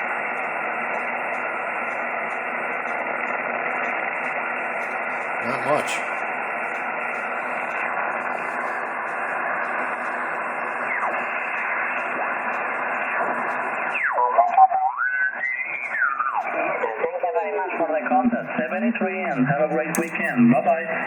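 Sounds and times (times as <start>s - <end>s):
whistling radio tones sliding: 13.8s - 16.5s
radio receiver hiss: 20.0s - 20.8s.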